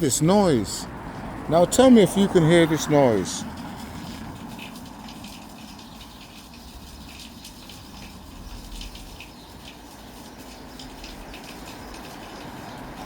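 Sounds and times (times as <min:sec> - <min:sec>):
street lamp fizzing and crackling: 0:00.0 - 0:13.0.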